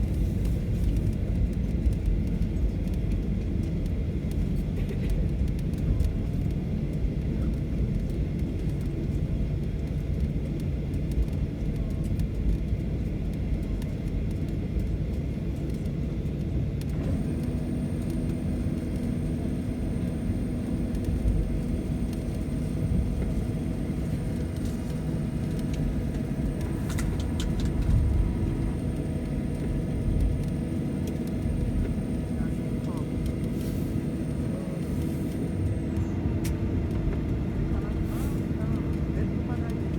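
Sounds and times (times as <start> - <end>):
aircraft cabin engine rumble: 0.0 - 39.9
steady hums: 17.0 - 39.9.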